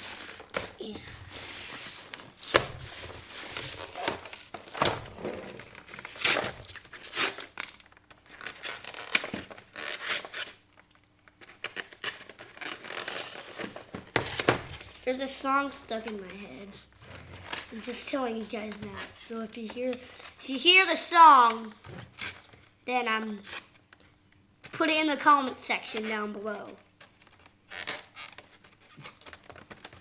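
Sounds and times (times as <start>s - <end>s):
packaging being torn and crinkled: 5.6s - 13.9s.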